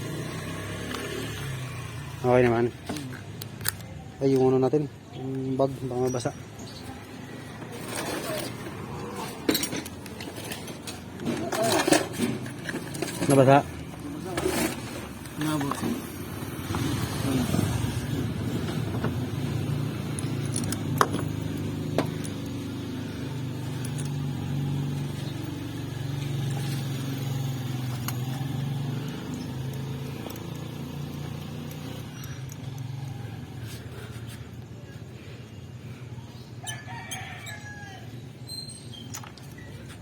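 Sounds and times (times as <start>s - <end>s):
rooster crowing: 36.6s - 38.3s.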